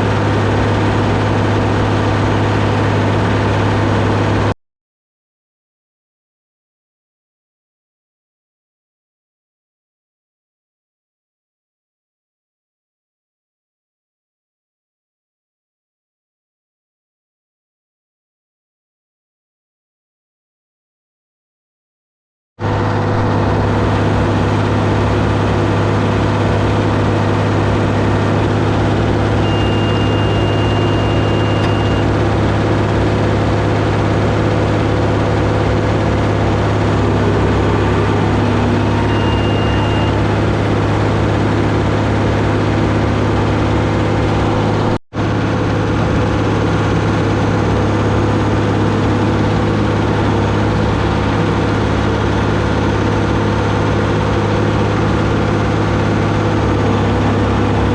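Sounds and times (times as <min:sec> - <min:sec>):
tractor diesel engine droning: 0:00.0 - 0:04.6, 0:22.6 - 0:57.9
high steady beep: 0:29.4 - 0:32.2, 0:36.9 - 0:40.9.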